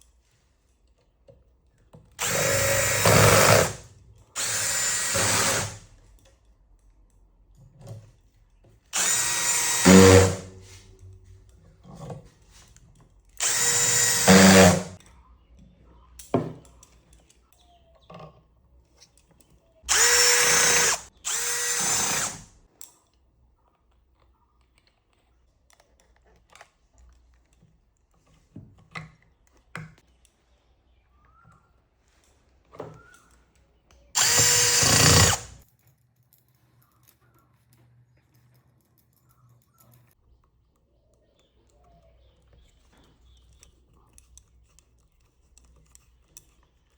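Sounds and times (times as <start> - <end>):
electric hand drill running: 2.2 - 3.8, 4.4 - 5.8, 9.0 - 10.6, 13.4 - 15.0, 19.9 - 22.4, 34.2 - 35.6.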